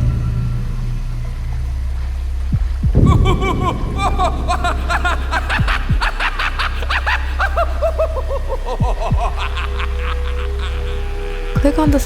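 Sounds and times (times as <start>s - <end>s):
deep falling booms: 0.0s - 6.8s
low drone: 0.0s - 12.0s
high-pitched giggling laugh: 3.1s - 12.0s.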